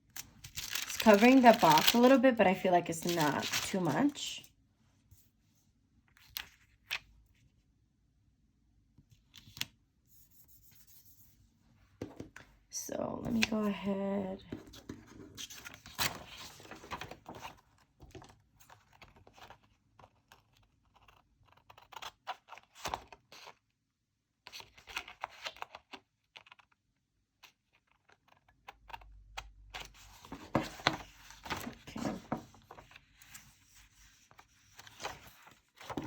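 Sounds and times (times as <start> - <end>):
paper rustling and scraping: 0.2 - 4.4, 14.5 - 17.6, 29.8 - 36.0.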